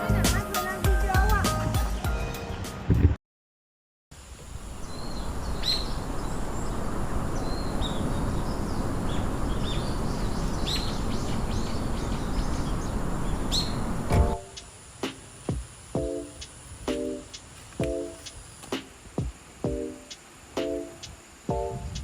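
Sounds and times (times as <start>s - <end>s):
birds chirping: 4.4s - 22.0s.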